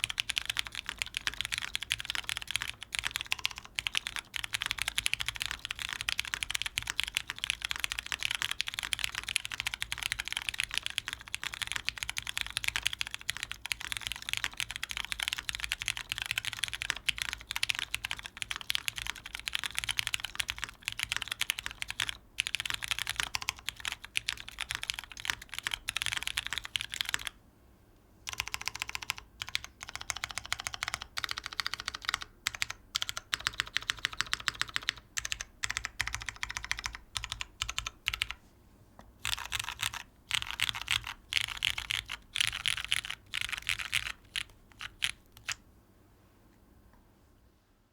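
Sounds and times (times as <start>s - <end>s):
fast mechanical keyboard typing: 0.0s - 27.4s, 28.3s - 38.4s, 39.2s - 45.6s.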